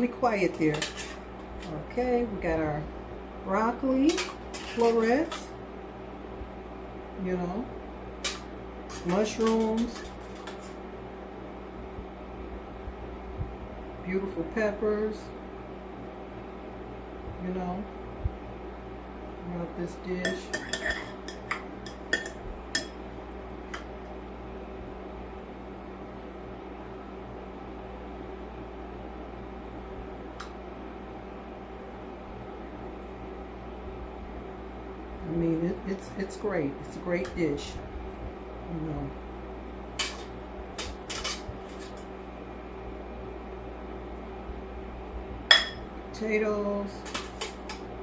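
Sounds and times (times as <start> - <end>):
mechanical hum: 0.0 - 48.0
utensils clinking on dishes: 4.0 - 5.5, 20.3 - 22.9, 40.0 - 42.0.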